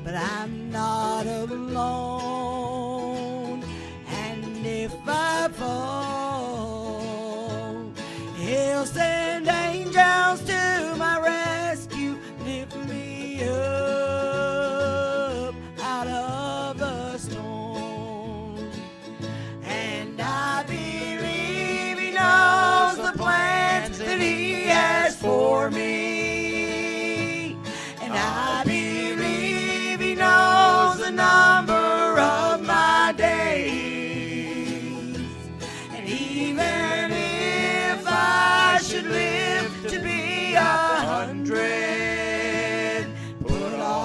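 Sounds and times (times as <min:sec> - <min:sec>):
country gospel song: 0:00.0 - 0:44.0
instrumental accompaniment: 0:17.8 - 0:44.0.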